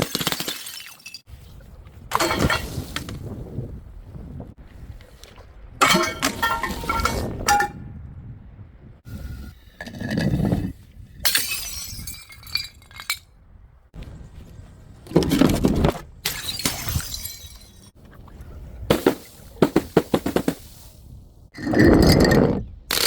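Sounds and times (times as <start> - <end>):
glass bottles shattering: 0.1 - 1.3, 5.8 - 7.7, 11.2 - 13.2, 16.3 - 17.9.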